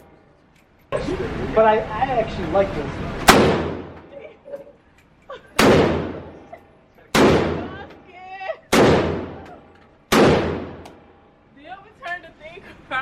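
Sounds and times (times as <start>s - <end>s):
gunshots with ringing decay: 3.3s - 4.0s, 5.6s - 6.5s, 7.1s - 7.9s, 8.7s - 11.1s.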